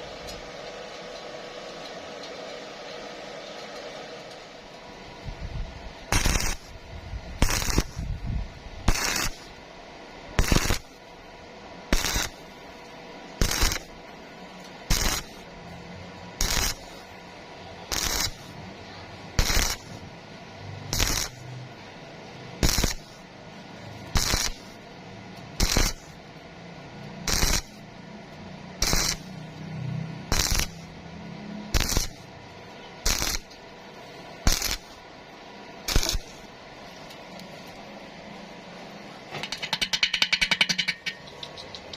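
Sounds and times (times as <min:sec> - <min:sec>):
welding arc crackling: 0:00.0 - 0:35.1, 0:35.8 - 0:37.8, 0:39.4 - 0:41.9
steady low hum: 0:00.0 - 0:41.9.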